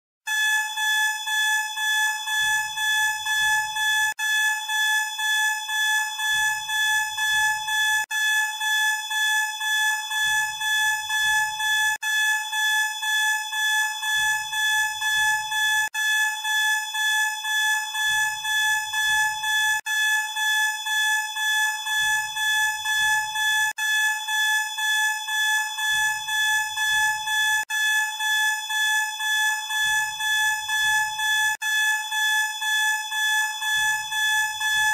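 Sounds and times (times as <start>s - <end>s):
fire alarm buzzing tone: 0.2s - 34.9s.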